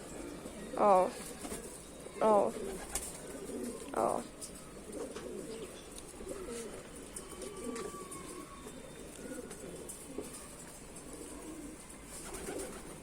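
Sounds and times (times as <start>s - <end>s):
pigeons cooing: 0.0s - 13.0s.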